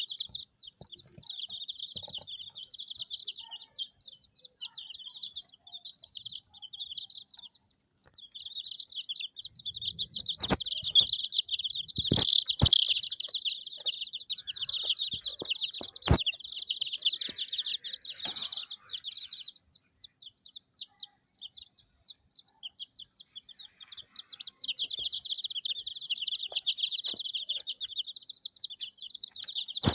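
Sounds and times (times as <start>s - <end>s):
baby chicks peeping: 0.0s - 29.9s.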